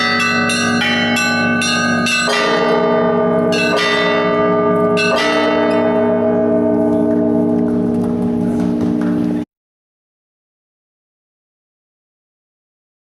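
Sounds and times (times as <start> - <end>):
church bells pealing: 0.0 - 9.5.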